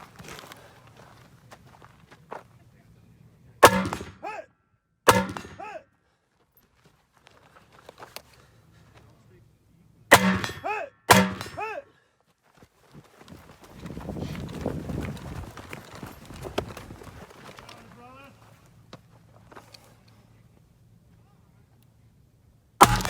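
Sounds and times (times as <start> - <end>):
steel target ringing: 3.6 - 4.2, 5.1 - 5.7, 10.1 - 11.7
gunshots: 3.6 - 4.3, 5.1 - 5.8, 10.1 - 11.8.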